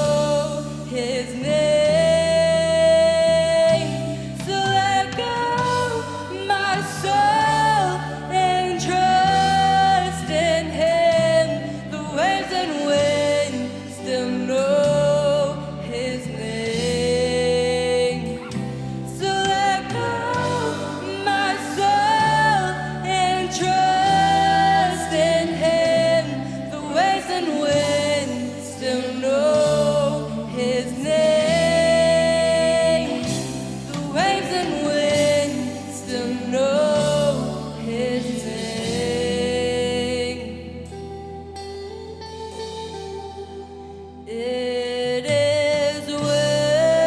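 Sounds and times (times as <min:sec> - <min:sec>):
worship music with singing: 0:00.0 - 0:47.0.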